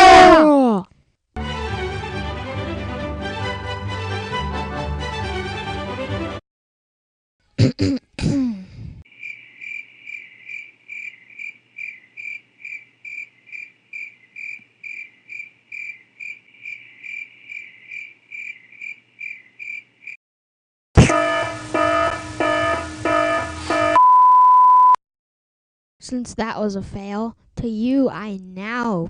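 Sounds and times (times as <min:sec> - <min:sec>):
crickets chirping: 0:09.1 - 0:20.2.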